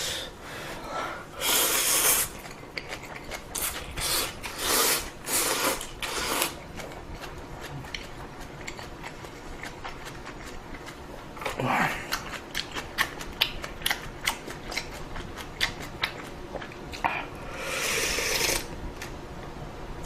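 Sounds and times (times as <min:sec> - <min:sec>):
noodles being slurped: 0:01.4 - 0:06.6, 0:17.6 - 0:18.7
wet chewing: 0:01.6 - 0:18.6.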